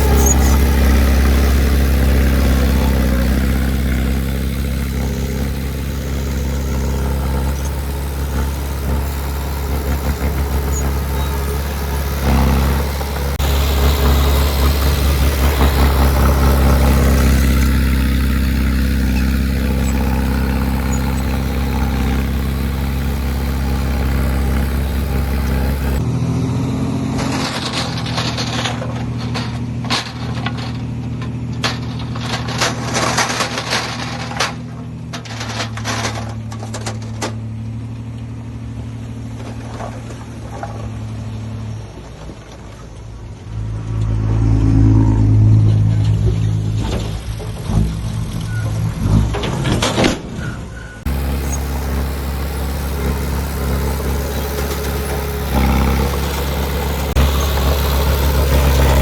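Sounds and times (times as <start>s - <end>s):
heavy diesel engines running: 0.0s - 59.0s
clanks and rattles: 27.2s - 37.6s, 45.6s - 59.0s.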